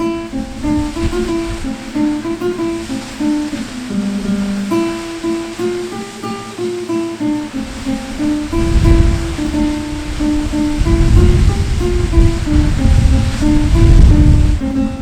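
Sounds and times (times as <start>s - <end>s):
falling water rushing: 0.0s - 15.0s
plucked acoustic guitar melody: 0.0s - 15.0s.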